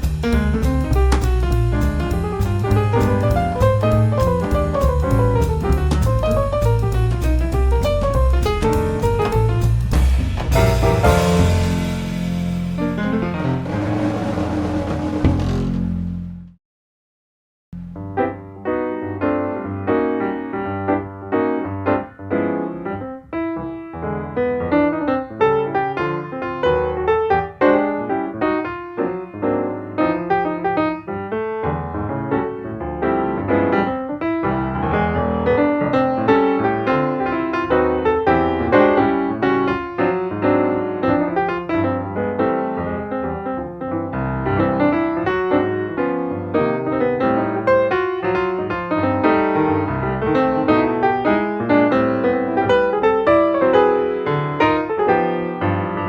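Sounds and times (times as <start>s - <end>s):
jazz piano chords: 0.0s - 16.6s, 17.8s - 56.0s
low bass line: 0.0s - 16.6s.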